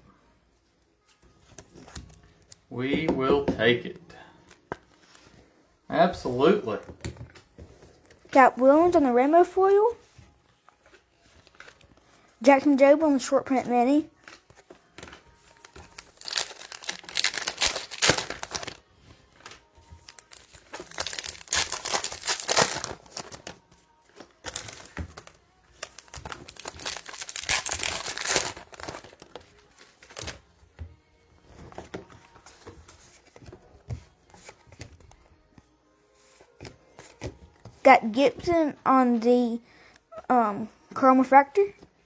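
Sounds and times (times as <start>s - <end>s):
card pack wrappers tearing: 15.6s - 18.8s, 20.0s - 23.7s, 24.4s - 30.4s.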